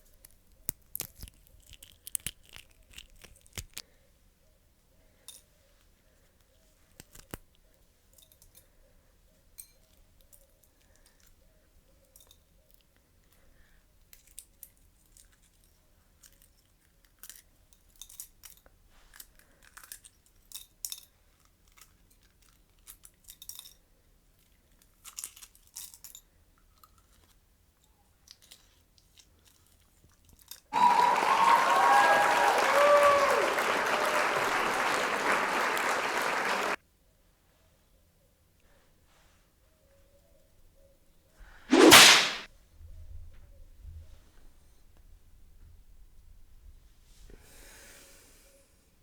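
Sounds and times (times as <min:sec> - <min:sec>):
person chewing and crunching food: 0:00.6 - 0:03.8.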